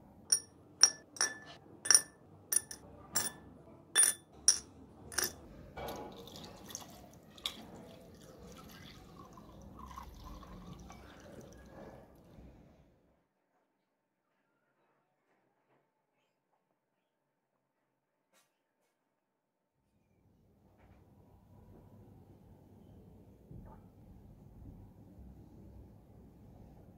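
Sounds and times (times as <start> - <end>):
metal parts clinking into glass jar: 0.3 - 3.4, 4.0 - 5.4
liquid pouring into jar: 5.9 - 11.6.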